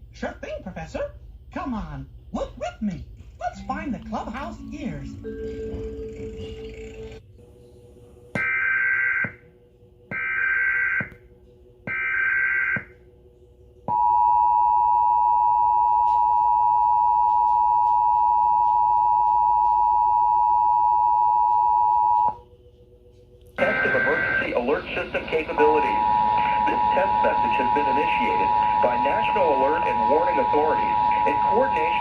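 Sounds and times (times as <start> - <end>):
screeching digital data bursts: 23.6 - 32.0
two-tone attention signal: 23.6 - 32.0.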